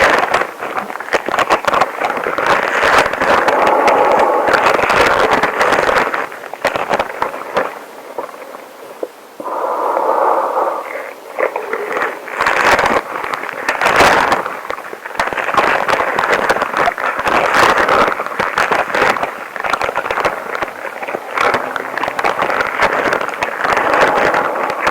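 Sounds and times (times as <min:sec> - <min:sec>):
rubber gloves crackling and squeaking: 0:00.0 - 0:07.7, 0:09.4 - 0:24.9
smooth steady hiss: 0:00.0 - 0:17.2.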